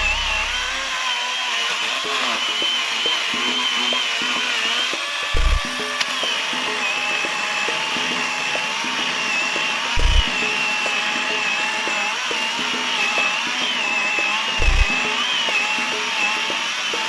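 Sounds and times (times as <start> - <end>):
low thumps: 0.0 - 0.9, 5.4 - 5.8, 10.0 - 10.4, 14.6 - 15.0
electric chainsaw cutting wood: 0.0 - 17.0.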